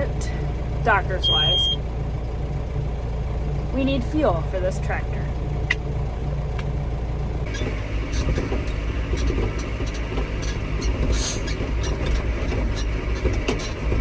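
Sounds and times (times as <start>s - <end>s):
tractor diesel engine droning: 0.0s - 14.0s
clicks and rattles: 7.5s - 14.0s.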